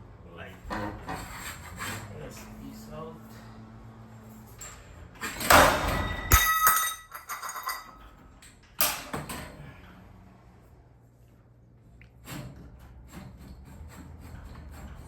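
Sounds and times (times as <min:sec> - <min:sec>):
metallic clank: 0:05.3 - 0:08.1
metal rattling: 0:05.4 - 0:08.1.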